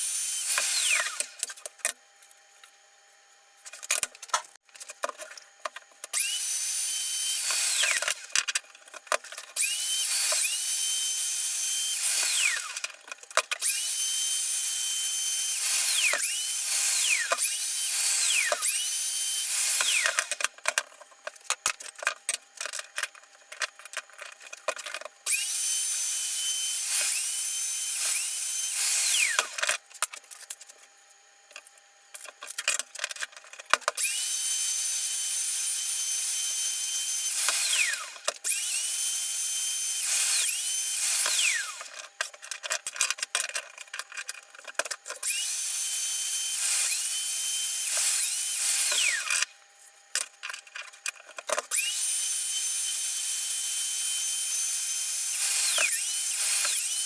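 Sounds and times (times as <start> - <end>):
power drill whining: 0.0 - 1.5, 6.1 - 8.4, 9.6 - 20.5, 25.3 - 29.8, 33.9 - 42.1, 45.2 - 49.5, 51.6 - 57.0
clicks and handling sounds: 0.5 - 6.4, 7.3 - 10.5, 12.0 - 13.8, 19.7 - 25.5, 29.1 - 34.2, 41.1 - 45.5, 48.8 - 52.0.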